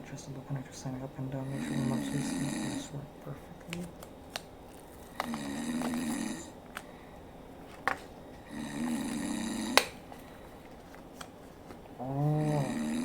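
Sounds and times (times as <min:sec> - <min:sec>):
recorded snoring: 0:00.8 - 0:03.8, 0:05.0 - 0:07.2, 0:08.3 - 0:10.5, 0:12.0 - 0:13.0.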